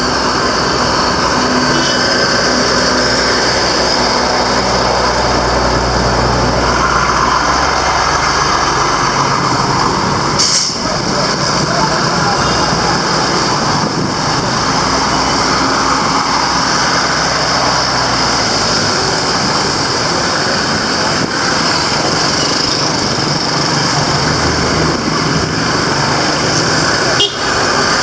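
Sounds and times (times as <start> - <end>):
street traffic noise: 0.0 - 28.0
vehicle engines running close by: 0.0 - 28.0.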